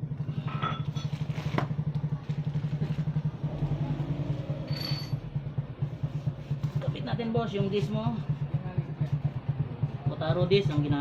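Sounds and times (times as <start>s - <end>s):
motorcycle engine idling: 0.0s - 11.0s
brief metal ring: 4.6s - 5.2s.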